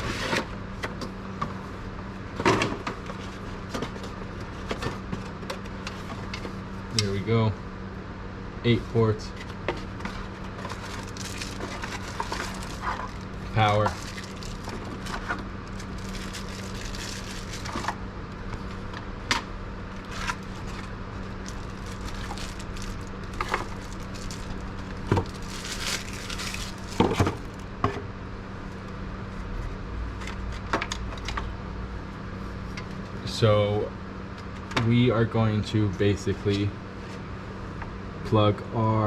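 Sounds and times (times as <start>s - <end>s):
steady low hum: 0.0s - 39.0s
clicks and rustling of handling cables: 2.4s - 7.2s, 9.3s - 27.6s, 30.2s - 31.5s.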